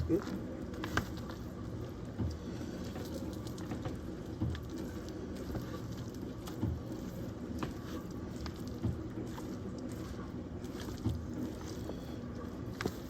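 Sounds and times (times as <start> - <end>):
cornbread dressing stirred in pan: 3.0 - 13.0.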